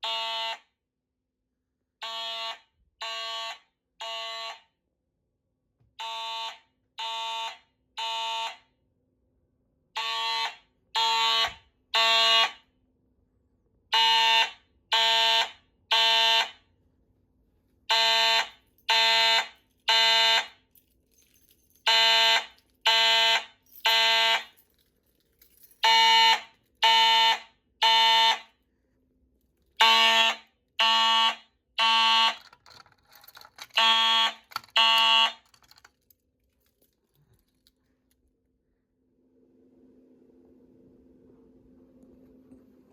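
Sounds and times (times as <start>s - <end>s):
fire alarm horn blasts: 0.0s - 0.8s, 2.0s - 4.8s, 6.0s - 8.7s, 9.9s - 12.7s, 13.9s - 16.7s, 17.9s - 20.6s, 21.9s - 24.6s, 25.8s - 28.6s, 29.8s - 32.6s, 33.7s - 35.5s.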